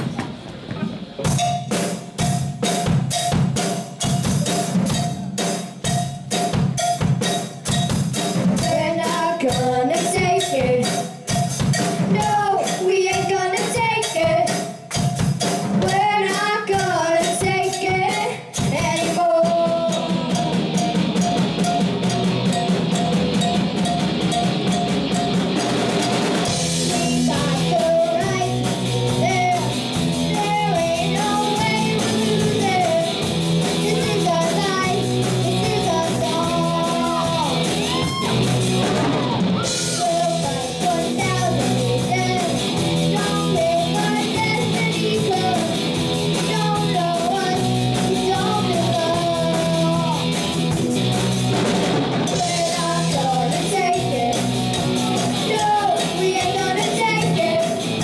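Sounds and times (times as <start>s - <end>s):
drum-kit beat: 0.0s - 58.0s
rock band playing live: 0.0s - 58.0s.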